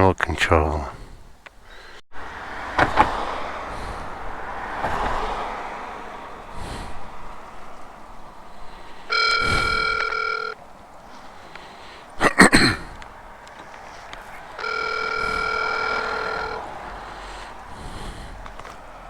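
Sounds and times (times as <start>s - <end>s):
phone ringback tone: 9.1s - 10.6s, 14.5s - 16.8s.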